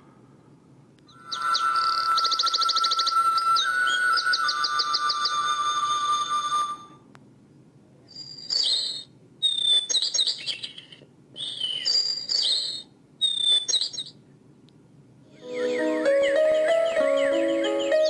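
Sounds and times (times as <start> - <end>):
alarm bird chirping from small speaker: 1.1 - 7.0, 8.1 - 14.2, 15.4 - 18.0.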